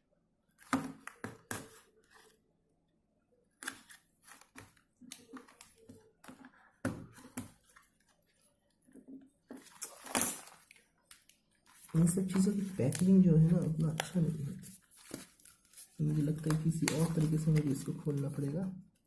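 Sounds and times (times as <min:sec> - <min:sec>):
packaging crinkling: 0:09.6 - 0:18.5.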